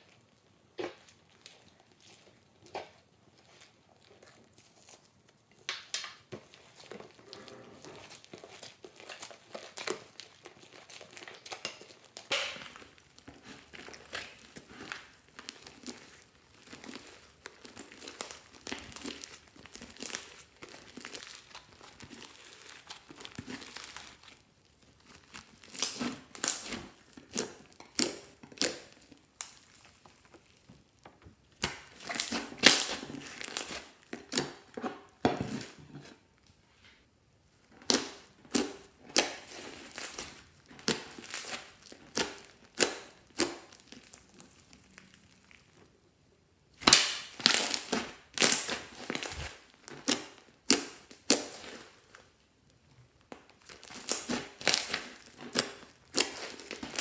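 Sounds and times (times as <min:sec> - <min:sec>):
slime crackling and squishing: 0:00.0 - 0:36.5, 0:37.4 - 0:57.0.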